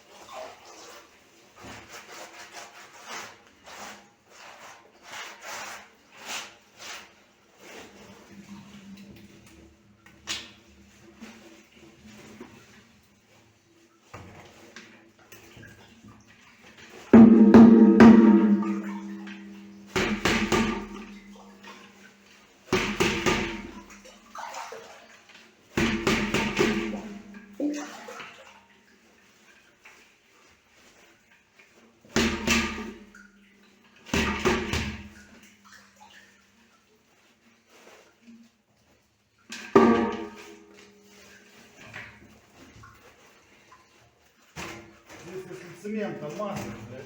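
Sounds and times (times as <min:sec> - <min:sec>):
hard knocks with ringing tone: 0:17.2 - 0:21.1.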